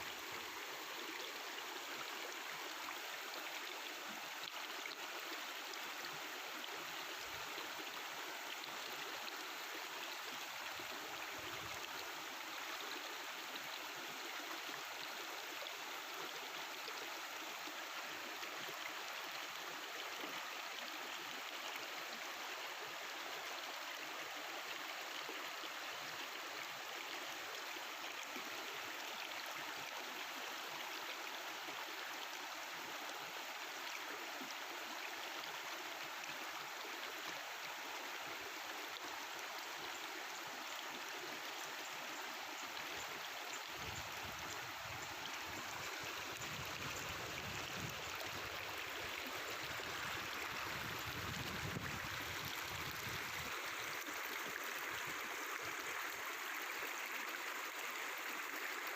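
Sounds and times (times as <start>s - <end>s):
river water flowing over rocks: 0.0s - 58.9s.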